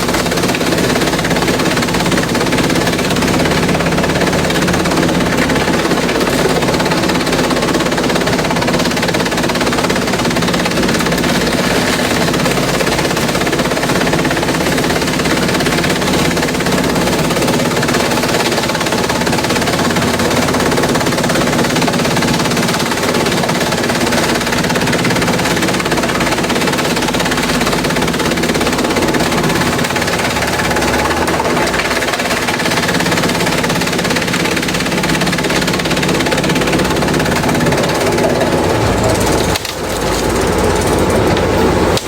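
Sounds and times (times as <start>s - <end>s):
shredder engine drone: 0.0s - 42.0s
bamboo cracking and clattering: 35.5s - 42.0s.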